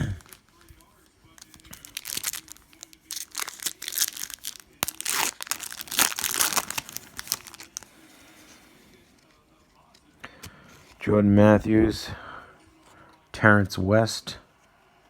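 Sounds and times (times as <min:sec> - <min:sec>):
foil wrapper tearing and crinkling: 0:00.0 - 0:07.9.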